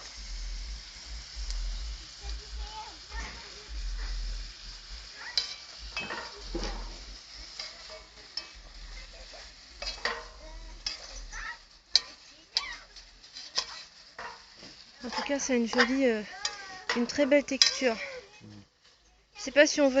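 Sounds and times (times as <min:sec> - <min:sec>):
food sizzling in oil: 0:00.0 - 0:20.0
utensil scraping a pot: 0:05.1 - 0:18.6.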